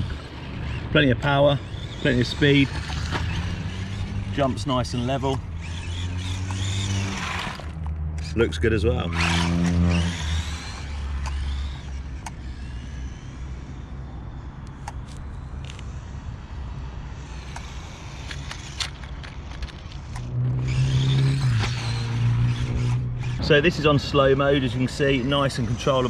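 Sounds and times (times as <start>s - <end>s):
electric motor whining: 0.0s - 26.0s
scattered clicks: 14.6s - 15.9s, 17.5s - 20.3s.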